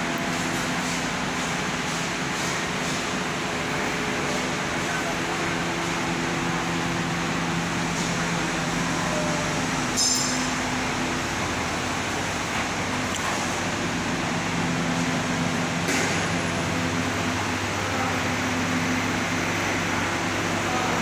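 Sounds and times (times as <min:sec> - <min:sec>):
high metallic clink: 0:09.9 - 0:10.7.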